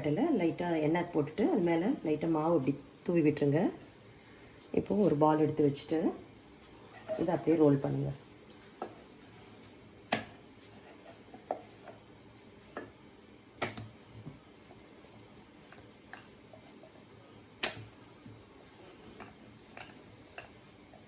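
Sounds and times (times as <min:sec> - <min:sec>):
rolling pin rolling dough: 0:06.7 - 0:21.0.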